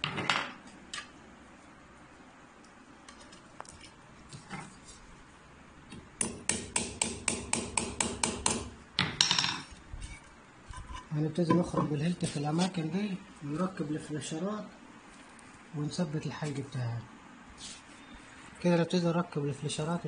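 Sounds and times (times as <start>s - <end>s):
hammer striking nail: 6.2s - 9.3s.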